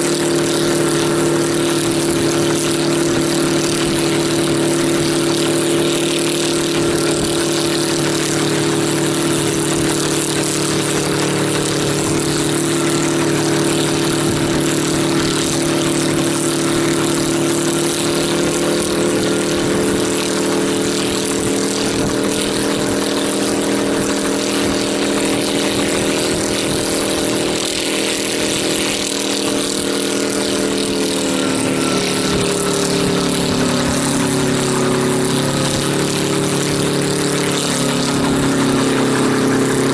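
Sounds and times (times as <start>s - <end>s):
helicopter engine running: 0.0s - 39.9s.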